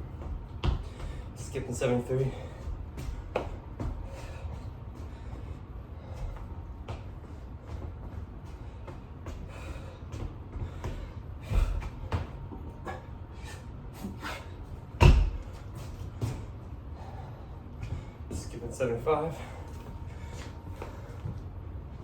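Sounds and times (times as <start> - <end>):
hands and feet thudding on floor: 15.0 - 16.5.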